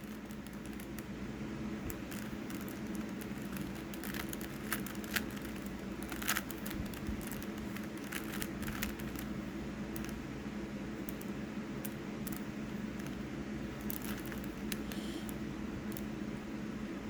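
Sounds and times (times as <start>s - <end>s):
puzzle cube clicking as it turns: 0.0s - 1.0s, 1.9s - 9.3s, 10.0s - 10.2s, 13.8s - 16.1s
low electrical hum: 0.0s - 17.0s.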